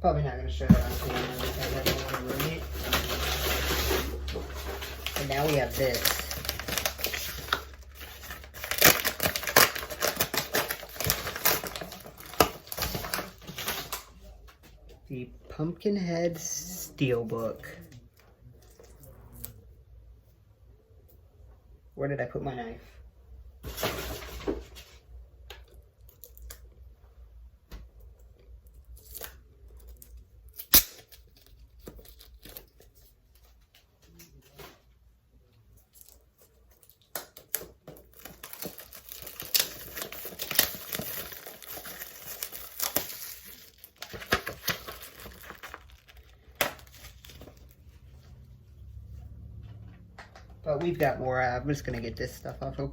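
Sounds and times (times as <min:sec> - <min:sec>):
knife cutting packaging: 0:00.7 - 0:14.1, 0:35.9 - 0:47.7
plastic and card crinkling: 0:00.7 - 0:14.9, 0:23.8 - 0:26.7, 0:28.5 - 0:34.8, 0:35.5 - 0:48.5.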